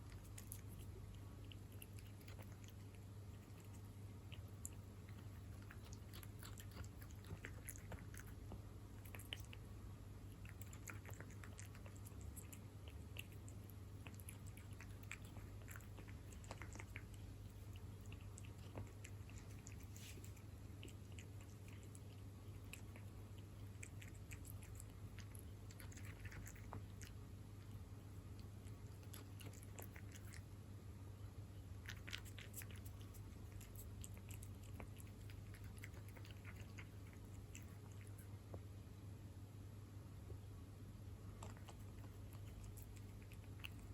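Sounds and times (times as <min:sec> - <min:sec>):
cat chewing and lapping food: 0:00.0 - 0:38.9, 0:41.1 - 0:43.9
steady low hum: 0:00.0 - 0:43.9.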